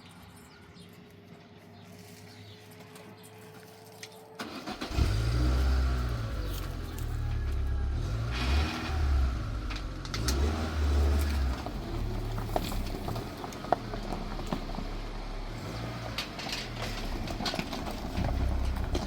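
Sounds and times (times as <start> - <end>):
car engine cranking and starting: 4.4 - 19.0
engine low uneven rumble: 4.4 - 19.0.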